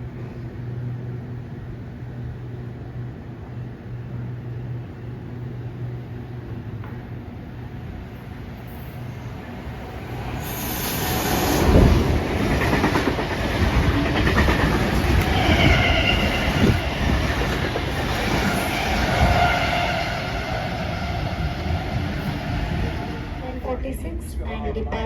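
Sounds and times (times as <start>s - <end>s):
train wheels clattering: 10.9s - 20.4s.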